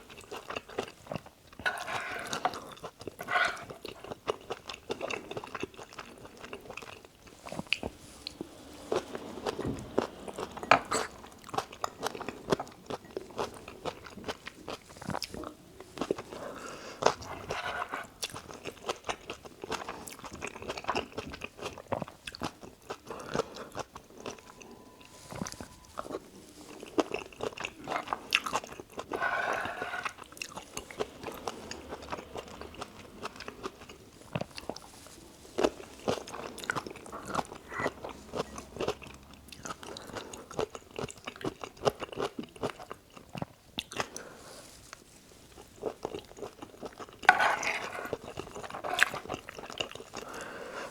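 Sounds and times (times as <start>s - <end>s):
chewing and crunching food: 0.0s - 50.9s.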